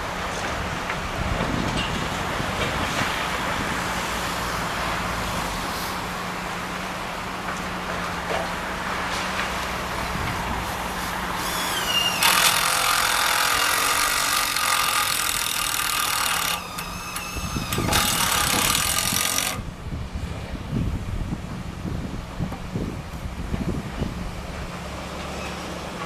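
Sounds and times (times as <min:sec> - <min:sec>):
wind rumble on microphone: 0:00.0 - 0:06.1, 0:09.8 - 0:11.2, 0:16.8 - 0:25.2
harsh grinding and screeching: 0:11.0 - 0:19.7.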